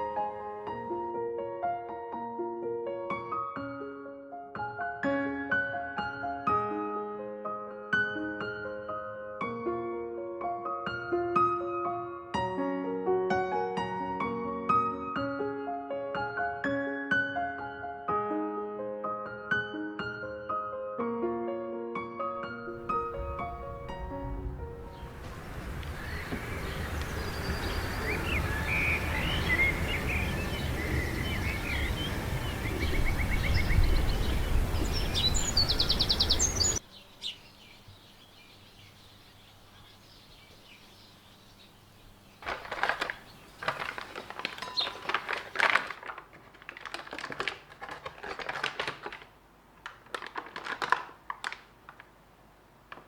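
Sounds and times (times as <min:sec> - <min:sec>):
birds chirping: 0:22.7 - 0:49.2
bird trill: 0:22.9 - 0:42.3
quick clicking and clattering: 0:42.4 - 0:52.2.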